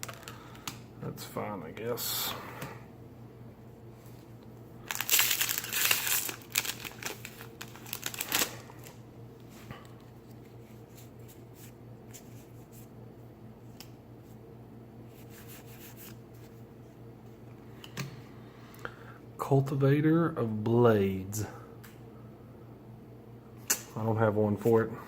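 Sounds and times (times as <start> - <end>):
foil wrapper tearing and crinkling: 0.0 - 0.4, 4.8 - 9.0
cards being handled and slid: 10.3 - 12.9, 15.1 - 16.6.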